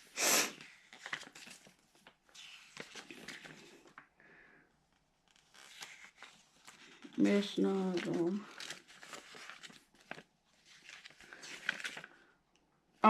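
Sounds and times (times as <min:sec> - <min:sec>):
packaging rustling: 0:05.3 - 0:12.2.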